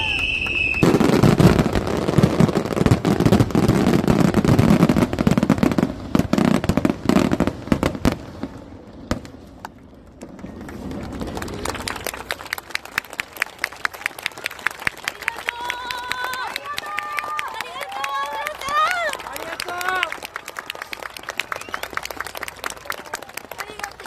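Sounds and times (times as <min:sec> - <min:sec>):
fireworks banging and crackling: 0:00.0 - 0:13.2.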